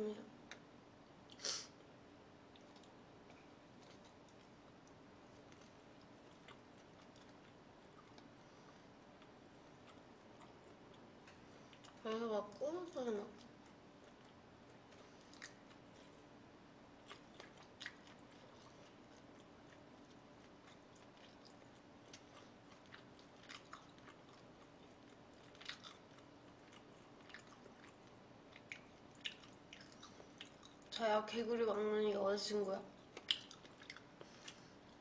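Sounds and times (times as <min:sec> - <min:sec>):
close-up chewing: 0:02.5 - 0:12.1, 0:13.3 - 0:31.1, 0:32.9 - 0:35.0
wet mouth clicks and smacks: 0:33.2 - 0:34.1.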